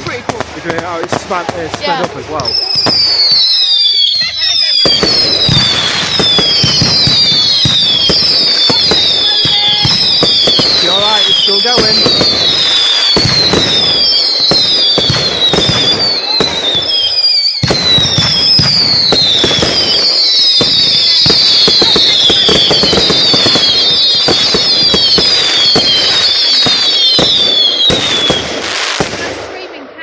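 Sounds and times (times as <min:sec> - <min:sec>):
whistling fireworks: 0:00.0 - 0:30.0.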